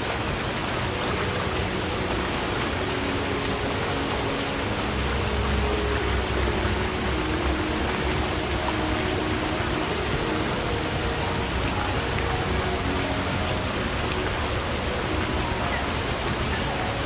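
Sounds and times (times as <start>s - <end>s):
faint low gurgles: 0.0s - 17.0s
stream water rushing: 0.0s - 17.0s.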